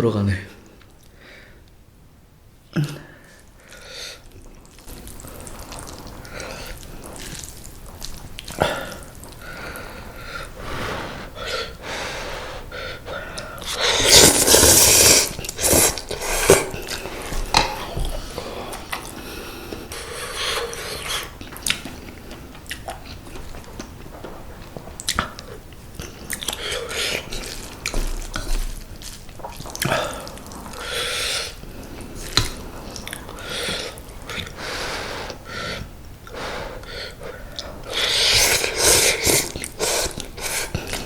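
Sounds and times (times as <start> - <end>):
slurping and chewing noodles: 3.6 - 41.0
mouth clicks and smacks: 20.5 - 30.8.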